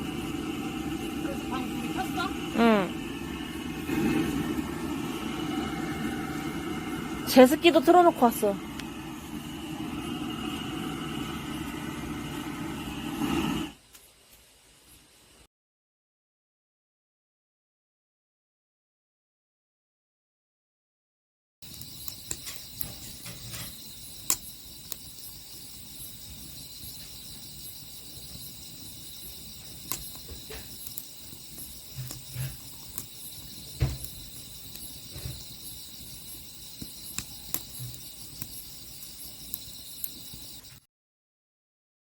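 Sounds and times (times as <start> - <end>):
crickets and insects chirping: 21.6 - 40.8
sharp clicks: 21.6 - 40.8.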